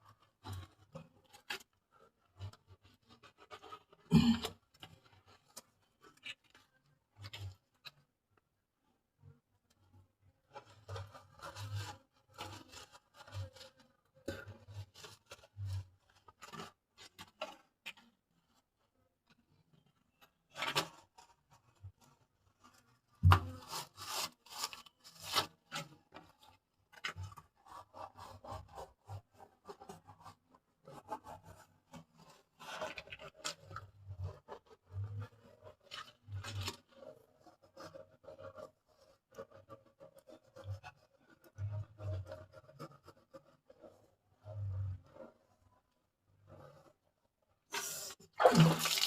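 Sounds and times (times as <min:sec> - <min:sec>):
rubbing and scraping: 0:10.5 - 0:18.8, 0:19.8 - 0:45.6.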